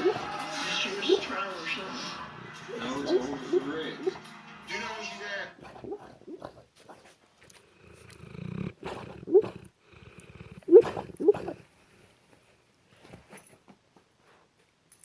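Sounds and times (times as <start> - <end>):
dog snoring: 2.7 - 4.3, 5.6 - 11.7.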